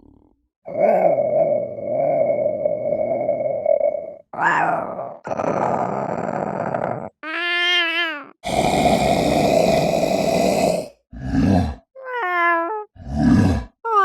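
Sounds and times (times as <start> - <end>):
cat growling: 0.0 - 7.2.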